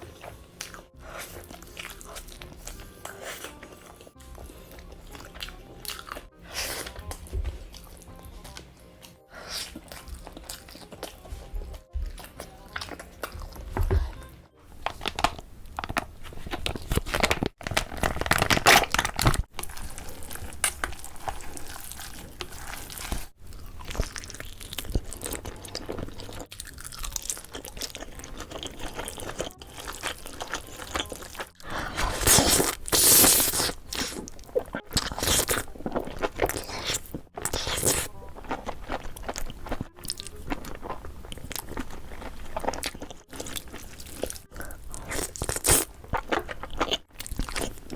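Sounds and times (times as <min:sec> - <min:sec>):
crunchy chewing of food: 0:00.0 - 0:47.9.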